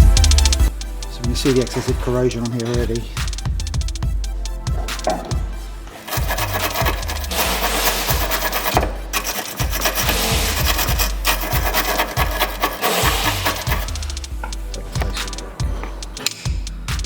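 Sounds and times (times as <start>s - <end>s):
background music with steady beat: 0.0s - 17.0s
rough scraping rasping noise: 4.8s - 16.4s.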